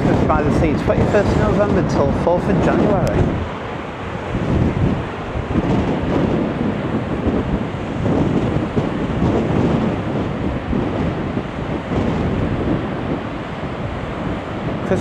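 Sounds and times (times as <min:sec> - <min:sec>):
strong wind buffeting microphone: 0:00.0 - 0:15.0.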